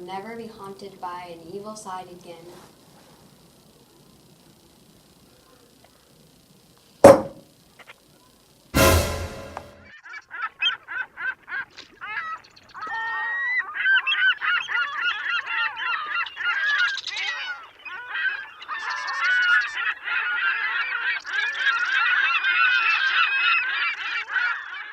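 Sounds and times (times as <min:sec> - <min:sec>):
flock of birds calling: 0:12.2 - 0:24.9.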